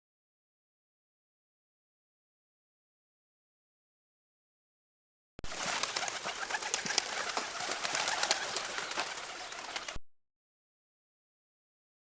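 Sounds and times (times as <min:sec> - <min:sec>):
birds calling sharply: 0:05.5 - 0:10.0.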